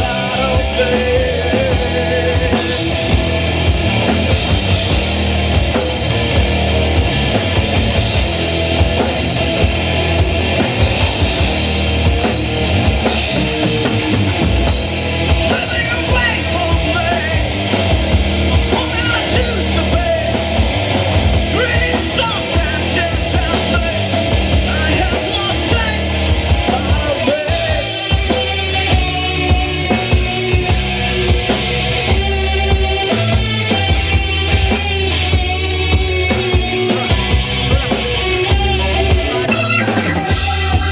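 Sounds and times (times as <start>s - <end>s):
drum kit beat: 0.0s - 40.9s
rock band playing live: 0.0s - 40.9s
wavering lead melody: 24.2s - 40.9s.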